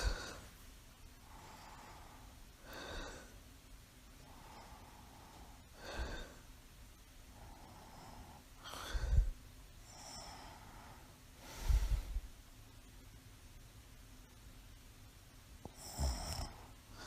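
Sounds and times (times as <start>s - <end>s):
woman breathing in sleep: 0.0s - 0.6s, 1.2s - 3.4s, 4.2s - 6.5s, 7.3s - 12.3s.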